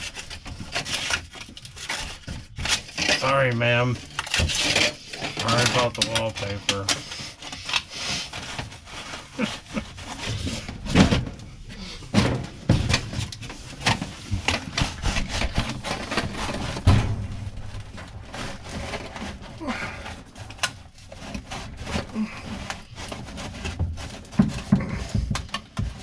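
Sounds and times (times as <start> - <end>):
duct crinkling and clicking: 0.0 - 26.0
knocks and thumps against wall: 12.1 - 20.0, 23.1 - 26.0.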